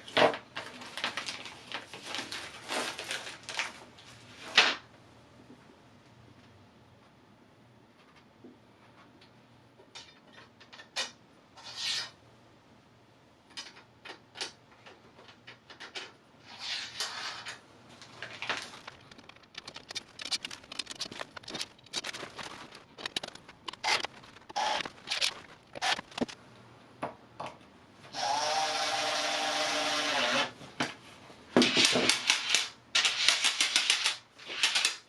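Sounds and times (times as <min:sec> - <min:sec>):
hard parts clicking and scraping: 0:13.5 - 0:26.4.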